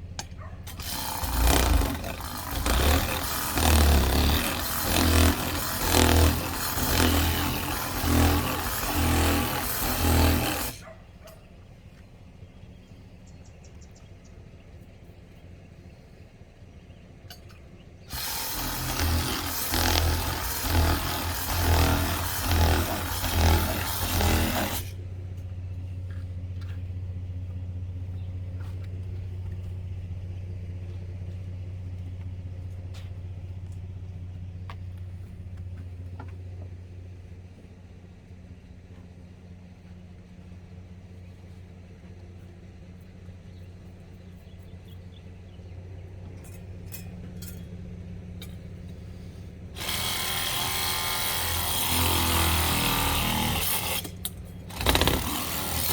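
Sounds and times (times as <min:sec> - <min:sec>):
steady low hum: 0:00.0 - 0:55.9
power tool cutting: 0:00.7 - 0:10.8, 0:18.1 - 0:25.0, 0:49.8 - 0:55.9.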